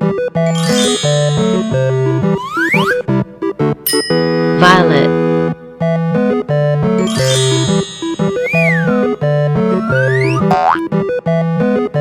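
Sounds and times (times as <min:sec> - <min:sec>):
bouncy cartoon music: 0:00.5 - 0:03.1, 0:07.0 - 0:10.9
sliding whistle tone: 0:00.5 - 0:03.1, 0:07.0 - 0:10.6.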